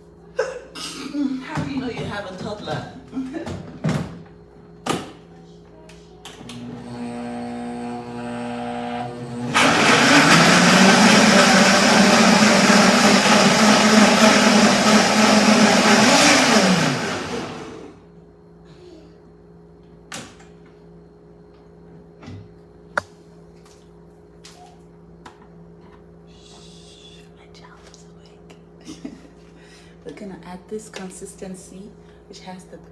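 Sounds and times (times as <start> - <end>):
blender running: 6.4 - 18.0.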